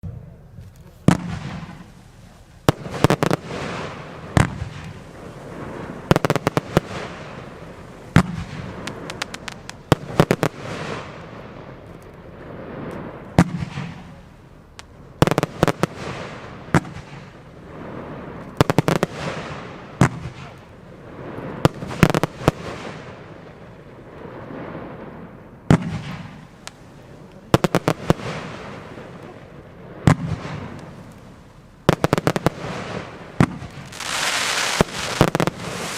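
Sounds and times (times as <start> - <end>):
firework hissing: 1.0 - 11.7, 24.0 - 35.9
firework bangs: 1.0 - 35.9.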